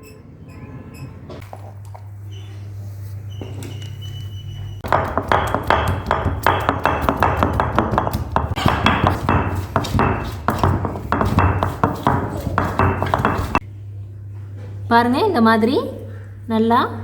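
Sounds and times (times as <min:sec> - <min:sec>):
stone pestle pounding root: 0:04.8 - 0:13.6.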